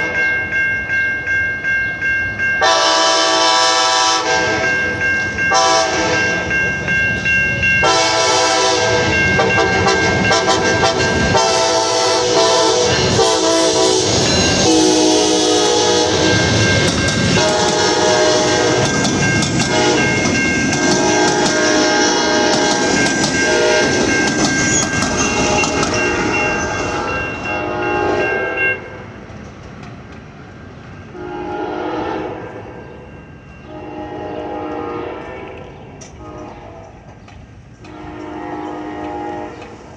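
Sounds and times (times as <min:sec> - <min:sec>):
train rumble: 0:00.0 - 0:39.9
train horn blasts: 0:02.6 - 0:06.5, 0:07.8 - 0:24.2, 0:25.1 - 0:29.0, 0:31.1 - 0:33.0, 0:33.6 - 0:37.0, 0:37.8 - 0:39.9
train wheels clickety-clack: 0:04.4 - 0:28.4, 0:29.3 - 0:31.6, 0:34.7 - 0:39.9.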